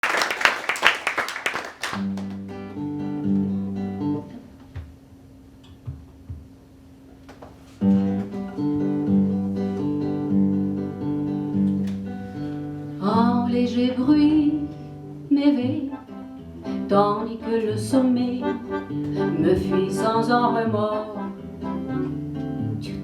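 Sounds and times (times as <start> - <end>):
acoustic guitar plucking: 7.8 - 23.0.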